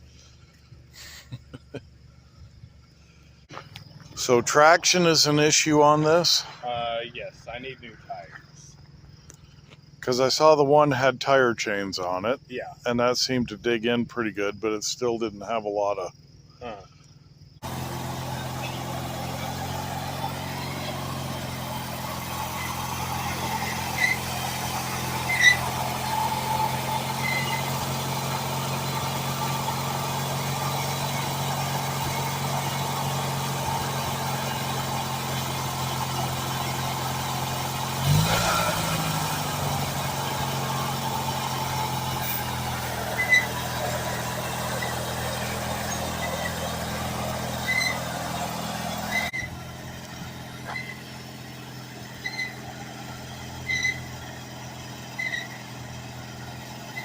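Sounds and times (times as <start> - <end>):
small engine running: 17.6 - 57.0.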